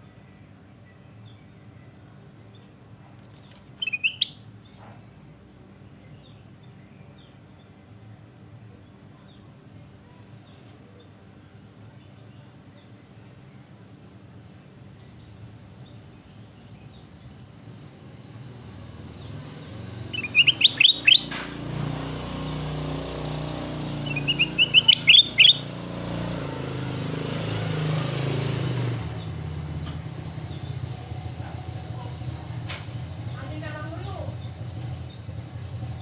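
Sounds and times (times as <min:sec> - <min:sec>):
bulbul singing whistled notes: 0:03.8 - 0:04.4, 0:19.2 - 0:28.6.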